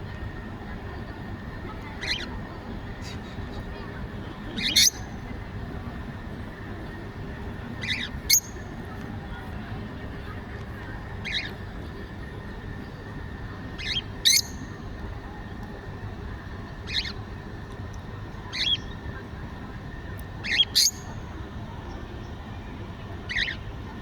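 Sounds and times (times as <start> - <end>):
low background hum: 0.0 - 24.0
small birds chirping: 1.9 - 2.4, 4.5 - 5.2, 7.8 - 8.8, 13.8 - 14.8, 16.8 - 17.2, 18.5 - 19.0, 20.4 - 21.2, 23.3 - 23.7.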